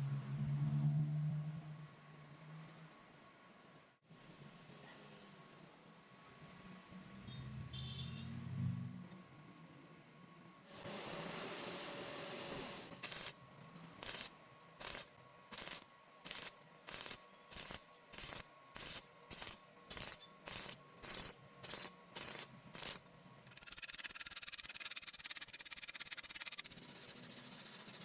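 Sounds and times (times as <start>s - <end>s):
welding arc crackling: 12.9s - 28.0s.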